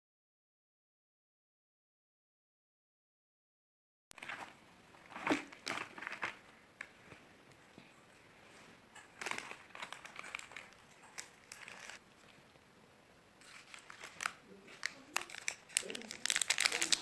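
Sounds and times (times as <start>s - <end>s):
wrapper crinkling and tearing: 4.2s - 7.2s, 8.9s - 12.4s, 13.4s - 17.0s.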